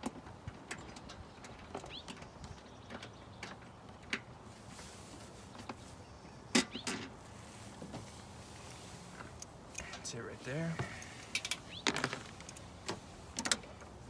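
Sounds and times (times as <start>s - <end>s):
hand tools clicking and knocking: 9.2s - 13.9s.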